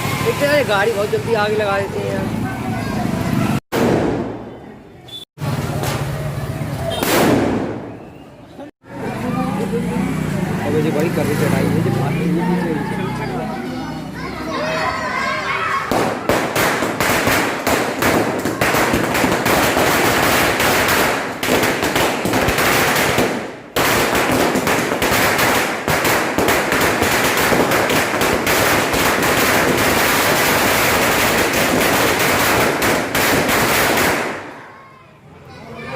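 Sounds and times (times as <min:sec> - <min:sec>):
firecrackers banging: 0:03.1 - 0:04.6, 0:05.4 - 0:08.2, 0:15.8 - 0:34.7.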